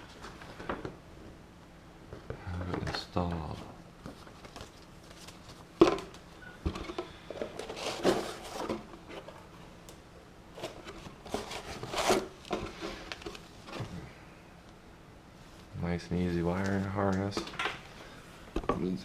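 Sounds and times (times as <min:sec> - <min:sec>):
packaging rustling: 0:06.9 - 0:09.4, 0:10.5 - 0:14.0.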